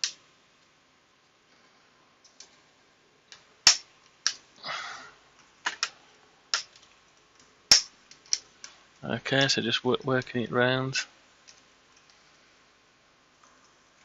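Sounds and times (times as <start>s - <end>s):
plastic clips snapping: 7.7s - 8.5s.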